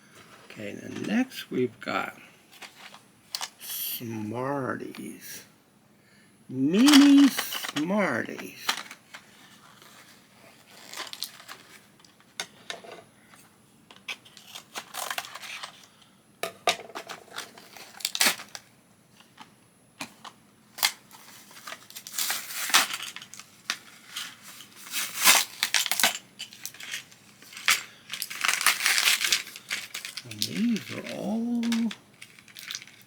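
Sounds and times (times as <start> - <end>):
packaging tearing and crinkling: 10.7 - 11.8, 17.6 - 18.6, 24.8 - 26.1, 28.2 - 33.0
clicks and rustles: 19.2 - 33.0.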